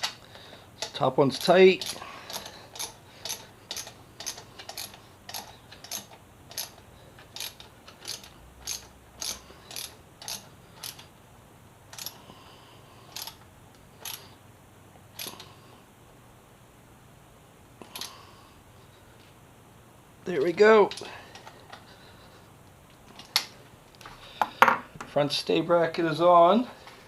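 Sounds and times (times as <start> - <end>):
ratchet wrench clicking: 0.8 - 11.1, 11.9 - 12.2, 13.1 - 13.4, 14.0 - 14.2, 15.2 - 15.5, 17.9 - 18.1.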